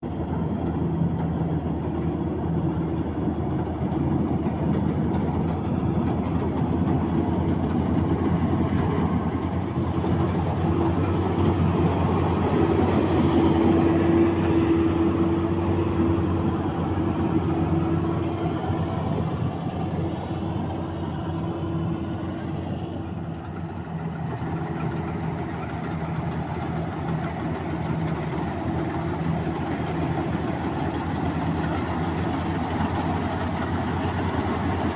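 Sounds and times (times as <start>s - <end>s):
combine harvester engine running: 0.0s - 34.9s.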